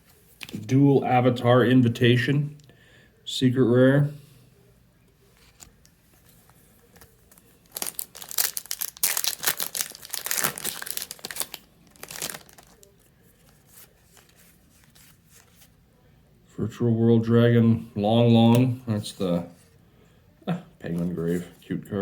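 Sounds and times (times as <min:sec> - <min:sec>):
foil wrapper tearing and crinkling: 0:07.0 - 0:15.0.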